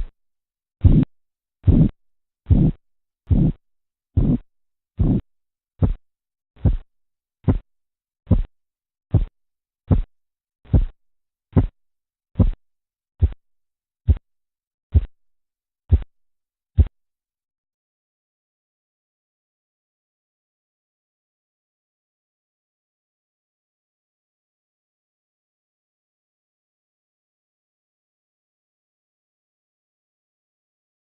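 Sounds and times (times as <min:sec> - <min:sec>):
pulse beats through stethoscope: 0:00.8 - 0:03.6, 0:04.2 - 0:04.4, 0:05.0 - 0:06.0, 0:06.6 - 0:07.7, 0:08.3 - 0:08.5, 0:09.1 - 0:09.3, 0:09.9 - 0:10.1, 0:10.7 - 0:11.8, 0:12.4 - 0:12.6, 0:13.2 - 0:13.4, 0:14.1 - 0:14.3, 0:14.9 - 0:15.2, 0:15.9 - 0:16.1, 0:16.8 - 0:17.0.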